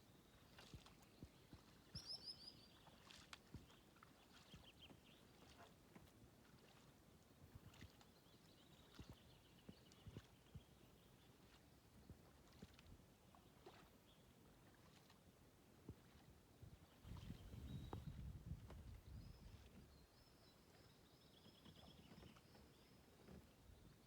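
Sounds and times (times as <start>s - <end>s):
faint birdsong: 0.0s - 5.8s, 7.7s - 12.6s, 16.8s - 24.0s
water drips and ticks: 0.4s - 2.1s, 2.8s - 10.7s, 11.4s - 13.9s.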